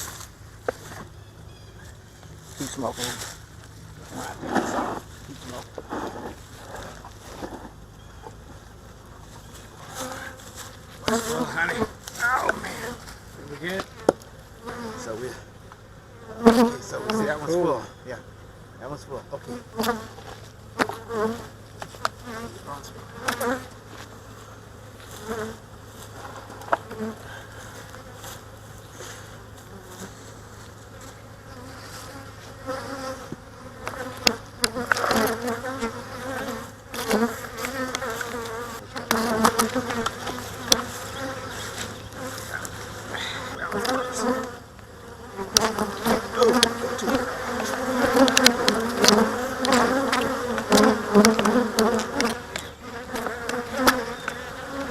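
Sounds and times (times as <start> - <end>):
honey bees buzzing: 0.0 - 54.9
hive parts knocking and clicking: 45.5 - 54.4.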